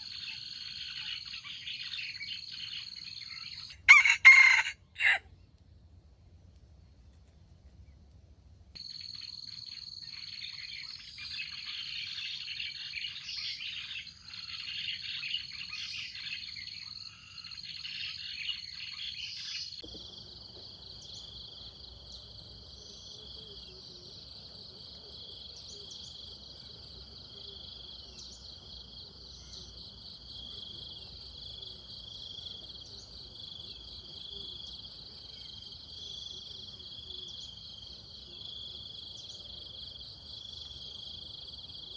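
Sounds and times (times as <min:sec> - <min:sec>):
pulsing insect chorus: 0:08.8 - 0:41.9.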